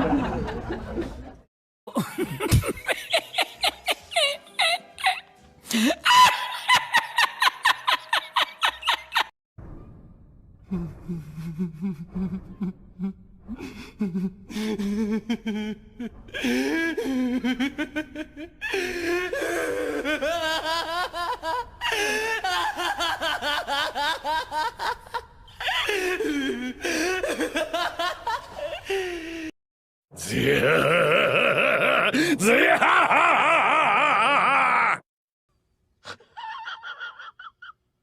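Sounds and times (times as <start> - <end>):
lower-voiced laugh: 0.0 - 9.3, 11.2 - 29.5
high-pitched laugh: 1.9 - 9.3, 36.1 - 37.8.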